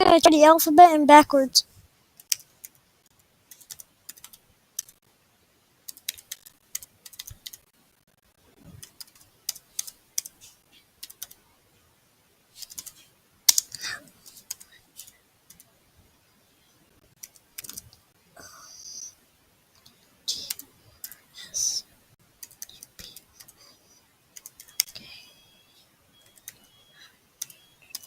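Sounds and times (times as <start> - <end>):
typing on computer keyboard: 3.5 - 5.0, 5.9 - 7.6, 8.8 - 10.4, 11.0 - 11.4, 12.6 - 13.8, 14.4 - 15.7, 17.2 - 17.9, 22.4 - 23.6, 24.4 - 25.0, 26.2 - 28.0.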